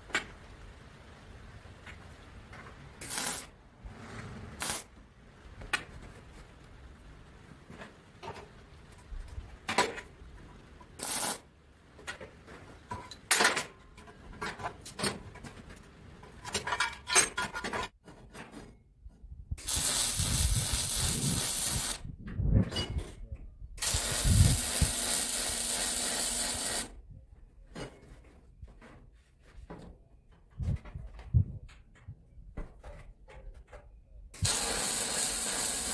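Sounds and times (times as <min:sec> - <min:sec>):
welding hissing crackle: 0:00.0 - 0:11.5, 0:19.6 - 0:22.0, 0:23.8 - 0:26.9, 0:34.4 - 0:35.9.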